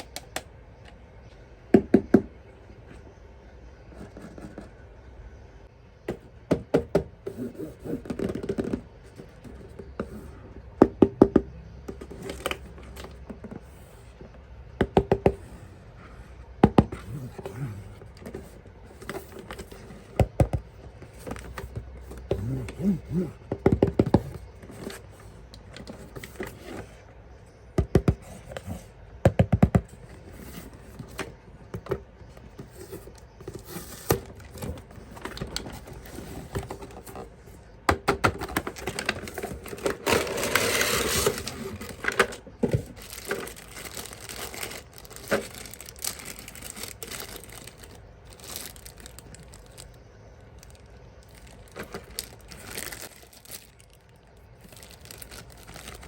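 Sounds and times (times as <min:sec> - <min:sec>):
packaging crinkling and tearing: 0:38.4 - 0:56.0.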